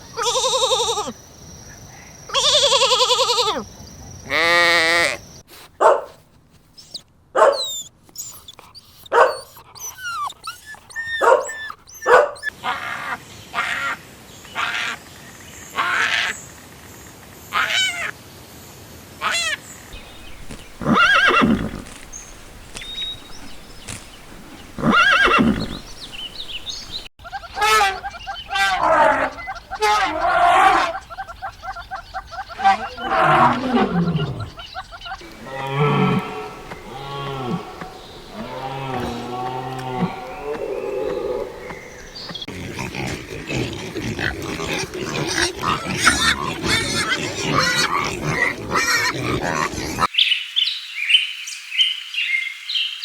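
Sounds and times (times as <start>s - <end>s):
animal cries: 0.1s - 1.1s, 6.8s - 14.0s, 17.5s - 18.1s, 19.2s - 50.1s
animal bleats: 0.2s - 1.1s, 2.3s - 3.6s, 19.2s - 31.0s, 35.2s - 41.5s, 42.4s - 50.1s.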